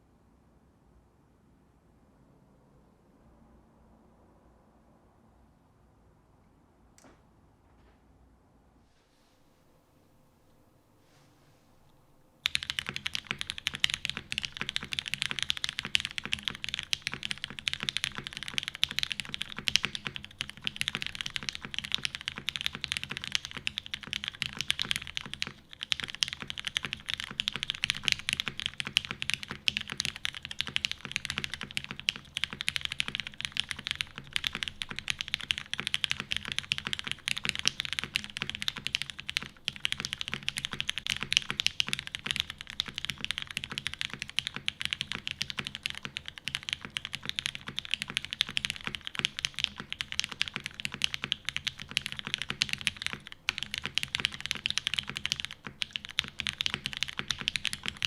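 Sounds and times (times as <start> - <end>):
fast typing on mechanical keyboard: 12.4 - 58.0.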